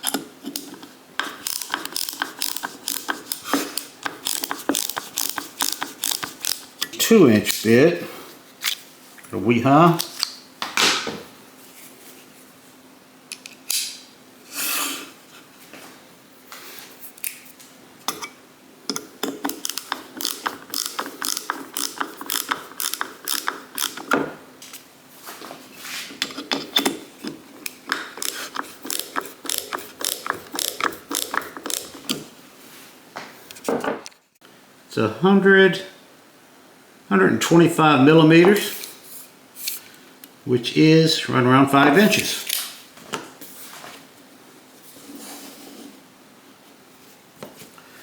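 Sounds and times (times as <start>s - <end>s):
ratchet clicking: 0.0s - 6.8s, 18.9s - 24.1s, 28.2s - 32.1s.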